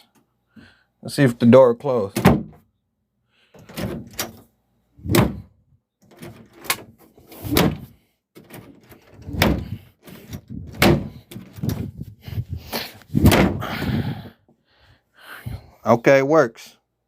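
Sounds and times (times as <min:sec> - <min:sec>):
wooden door thudding shut: 0:02.2 - 0:02.6, 0:05.0 - 0:05.5, 0:07.5 - 0:09.8, 0:10.7 - 0:11.8, 0:13.2 - 0:13.8.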